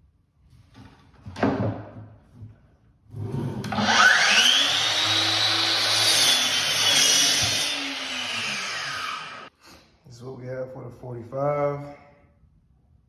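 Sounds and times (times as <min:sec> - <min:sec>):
miter saw cutting wood: 0:03.6 - 0:09.5.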